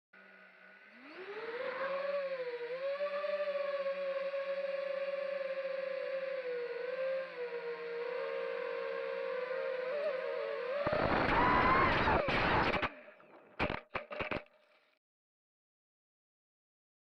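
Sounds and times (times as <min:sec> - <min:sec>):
quadcopter motors whining: 0:00.2 - 0:13.0.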